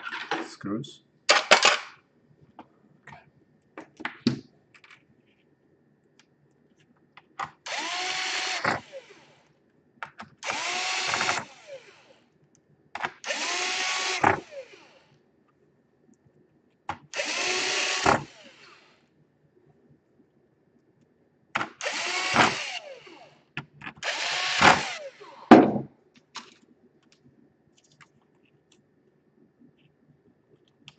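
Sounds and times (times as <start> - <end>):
electric screwdriver whirring: 7.6 - 9.3, 10.4 - 12.2, 13.2 - 15.0, 17.1 - 18.9, 21.7 - 23.4, 24.0 - 25.4.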